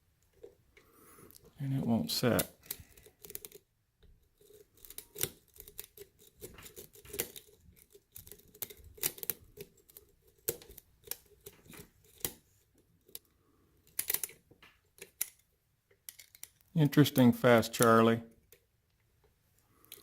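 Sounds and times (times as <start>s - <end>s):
lock pick clicking in lock: 2.4s - 3.6s, 4.4s - 12.4s, 13.1s - 14.4s, 15.0s - 16.7s.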